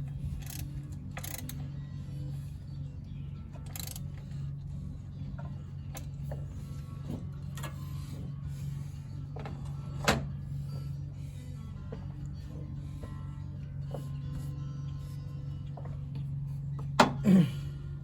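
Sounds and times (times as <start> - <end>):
steady low hum: 0.0 - 18.0
tools clicking and knocking: 0.4 - 1.6, 3.6 - 4.1.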